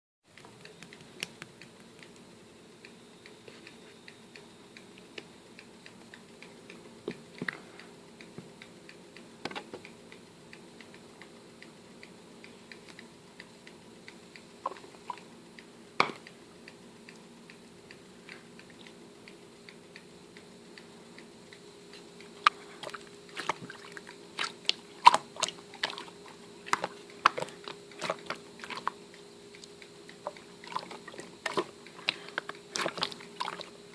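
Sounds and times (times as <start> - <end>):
sharp clicks and crunchy taps: 0.3 - 2.3
low electrical hum: 0.3 - 33.9.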